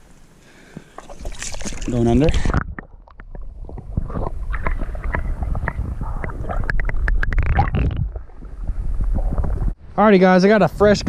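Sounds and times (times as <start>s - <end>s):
underwater clicks and knocks: 1.0s - 9.8s
muffled underwater rumble and gurgling: 1.4s - 9.8s.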